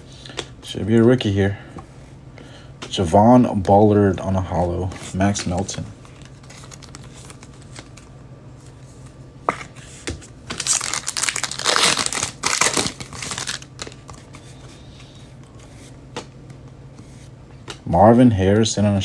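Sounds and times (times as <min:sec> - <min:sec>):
steady low hum: 0:00.0 - 0:19.0
wrapper tearing and crinkling: 0:06.2 - 0:07.9, 0:10.5 - 0:14.0.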